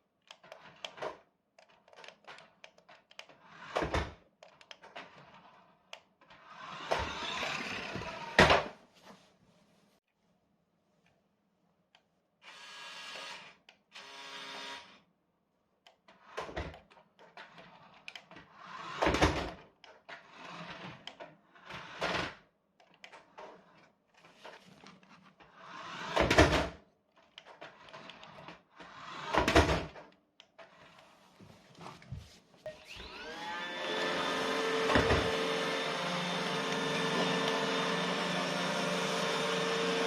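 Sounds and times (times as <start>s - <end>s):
toy car electric motor whirring: 6.3s - 8.4s, 12.4s - 15.0s, 25.6s - 26.4s.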